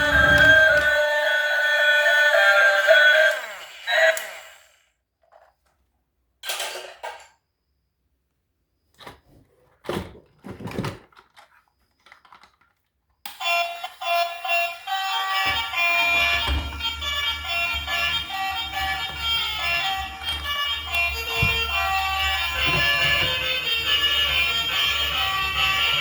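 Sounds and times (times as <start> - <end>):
background music: 0.0 - 3.6, 14.6 - 26.0.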